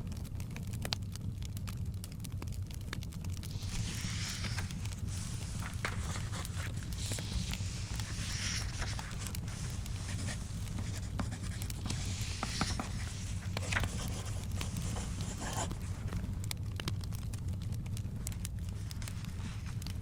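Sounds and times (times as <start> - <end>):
crackling clicks: 0.1 - 20.0
steady low rumble: 2.6 - 20.0
scratching on paper: 3.4 - 16.3, 18.6 - 20.0.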